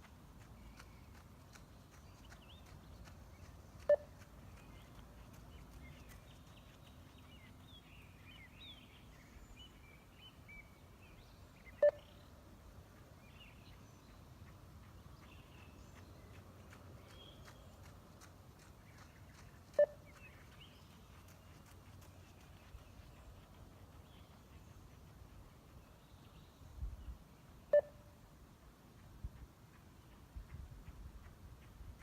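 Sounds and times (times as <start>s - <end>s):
faint bird chirping: 0.4s - 32.0s
short electronic beeps: 11.8s - 12.1s, 19.8s - 20.0s, 27.7s - 28.0s.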